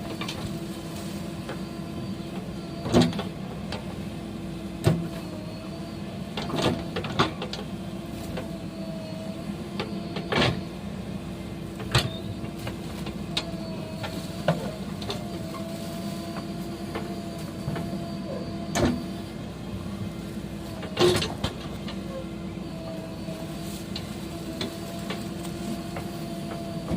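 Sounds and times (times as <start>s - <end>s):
machine humming: 8.4s - 26.9s.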